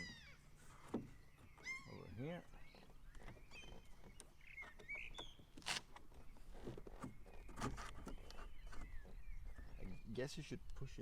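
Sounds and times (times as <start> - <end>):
short high squeaks: 0.0 - 6.1.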